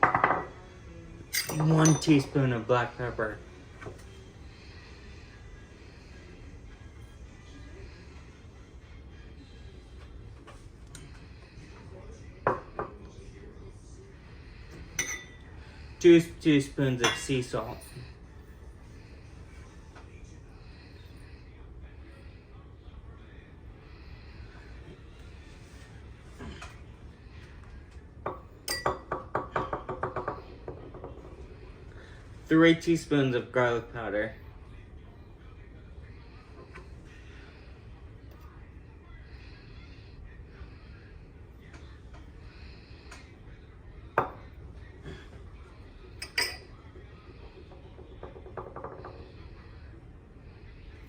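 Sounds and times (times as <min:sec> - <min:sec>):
measuring spoon clinking on bowl: 0:01.3 - 0:02.3, 0:15.0 - 0:15.4, 0:28.7 - 0:30.4, 0:46.2 - 0:46.7.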